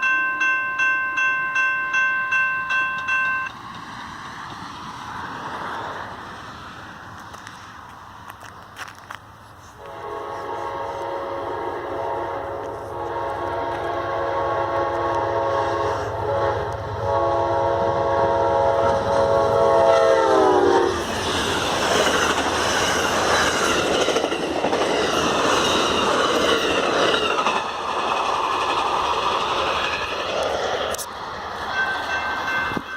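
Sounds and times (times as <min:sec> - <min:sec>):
train rumble: 0:00.0 - 0:32.9
wheels clacking on rails: 0:00.0 - 0:32.9
locomotive air horn: 0:09.8 - 0:21.1.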